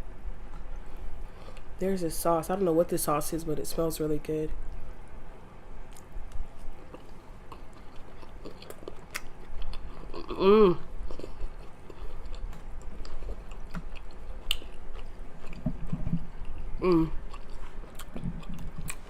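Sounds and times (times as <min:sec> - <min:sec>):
person chewing: 0:05.9 - 0:19.0
woman humming: 0:10.2 - 0:10.9, 0:16.8 - 0:17.2.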